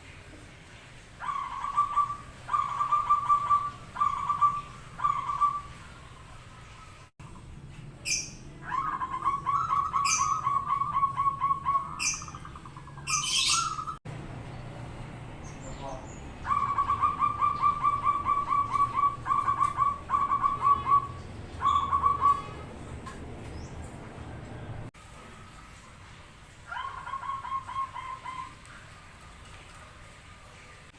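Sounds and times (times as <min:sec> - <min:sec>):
dove cooing: 0:01.2 - 0:06.5, 0:08.1 - 0:14.0, 0:16.4 - 0:23.4, 0:26.7 - 0:28.9
small bird chirping: 0:01.2 - 0:14.7, 0:15.4 - 0:22.6.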